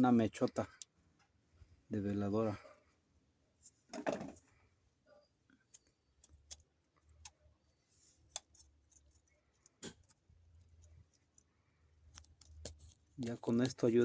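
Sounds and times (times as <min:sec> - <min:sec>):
light clicks and taps: 0:12.1 - 0:14.0.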